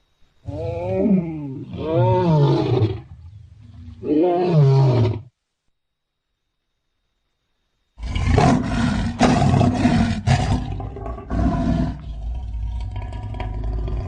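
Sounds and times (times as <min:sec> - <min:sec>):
lion roaring: 0:00.5 - 0:05.3, 0:08.0 - 0:14.0.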